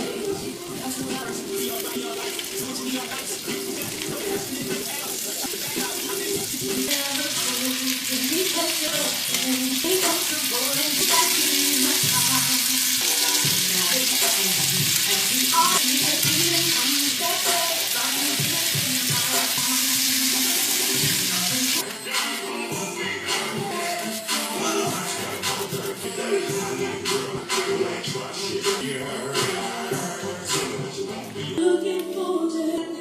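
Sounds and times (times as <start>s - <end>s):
background music: 0.0s - 33.0s
shrimp sizzling in a frying pan: 1.2s - 21.8s.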